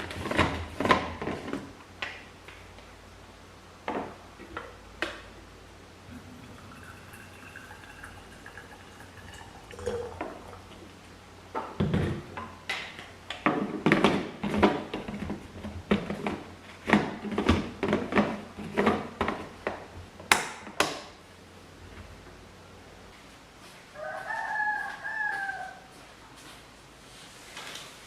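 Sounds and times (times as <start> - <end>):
liquid sounds: 6.0 - 11.1.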